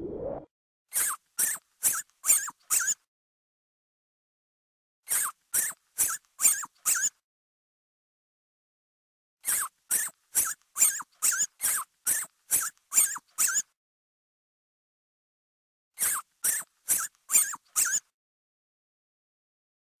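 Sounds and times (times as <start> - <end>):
rat squeaking: 0.9 - 3.0, 5.1 - 7.2, 9.4 - 13.7, 16.0 - 18.1.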